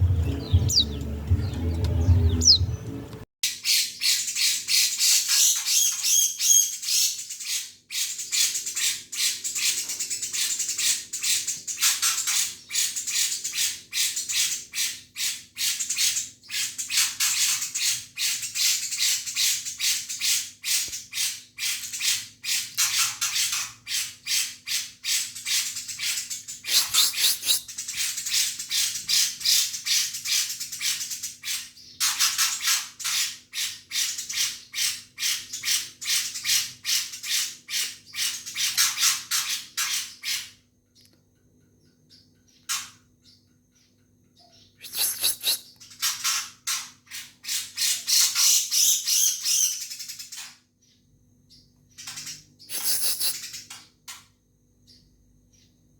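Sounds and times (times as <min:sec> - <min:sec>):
songbird chattering: 0:00.0 - 0:02.9, 0:25.5 - 0:31.1, 0:41.7 - 0:46.0, 0:52.1 - 0:53.7.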